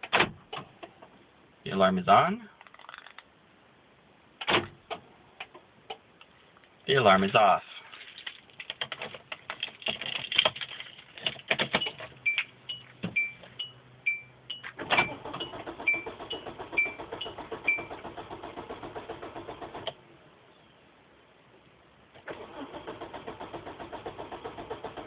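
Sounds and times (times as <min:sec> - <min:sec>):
car warning chime beeping: 0:11.8 - 0:18.0
starter motor cranking engine: 0:22.3 - 0:25.0.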